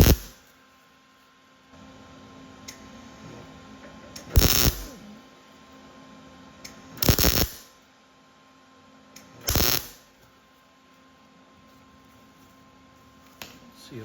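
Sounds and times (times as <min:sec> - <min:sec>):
welding arc bursts: 0:00.0 - 0:00.4, 0:04.3 - 0:05.0, 0:07.0 - 0:07.7, 0:09.4 - 0:10.1
faint steady hum: 0:00.0 - 0:14.0.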